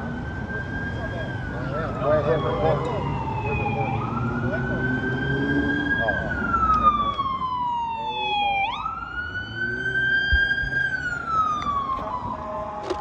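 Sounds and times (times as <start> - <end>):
emergency vehicle siren wailing: 0.0 - 13.0.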